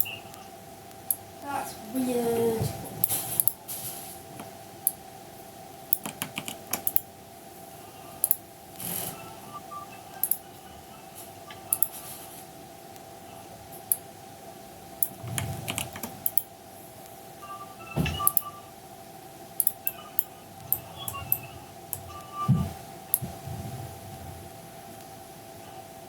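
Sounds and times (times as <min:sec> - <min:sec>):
steady hum: 0:00.0 - 0:26.0
sharp clicks and taps: 0:05.9 - 0:07.1, 0:10.2 - 0:10.4, 0:15.0 - 0:16.5.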